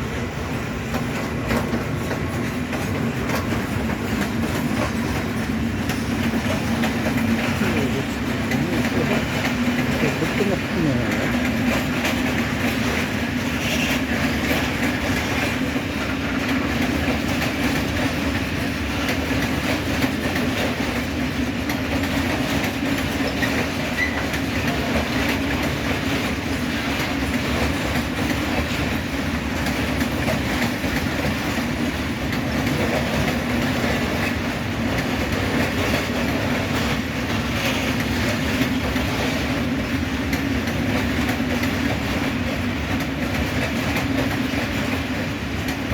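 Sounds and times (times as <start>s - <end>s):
freight train rolling past: 0.0s - 45.9s
wheels clicking over rail joints: 0.8s - 45.9s.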